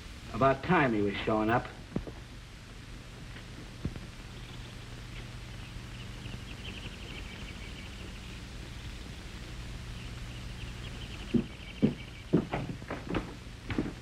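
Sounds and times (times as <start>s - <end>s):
low mains hum: 0.0s - 14.0s
crickets chirping: 3.1s - 13.6s
thuds: 11.3s - 14.0s.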